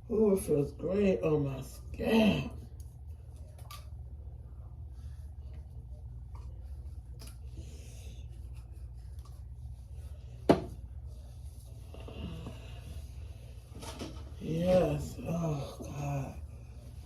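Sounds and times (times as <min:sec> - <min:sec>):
fingers rubbing scalp and hair: 0:05.4 - 0:13.8.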